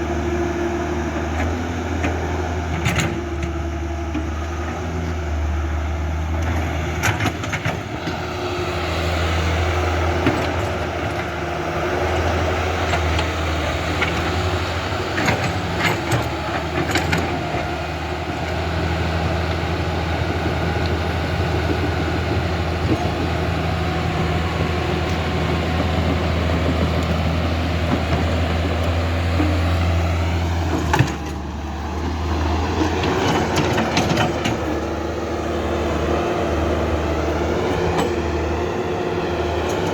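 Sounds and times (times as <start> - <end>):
electric motors and gearboxes running: 12.1 - 39.9.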